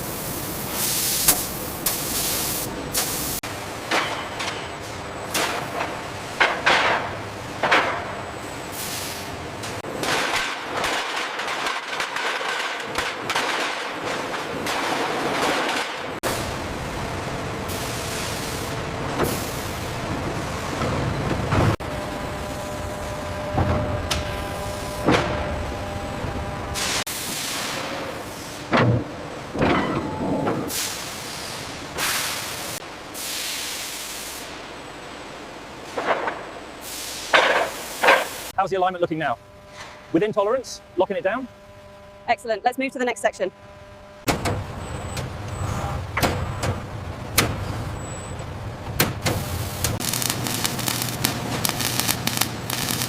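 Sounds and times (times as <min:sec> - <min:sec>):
steady machine noise: 0:09.4 - 0:26.8, 0:49.3 - 0:53.0
metal crackling and clattering: 0:10.0 - 0:16.2, 0:49.9 - 0:53.0
hissing bursts: 0:49.4 - 0:53.0.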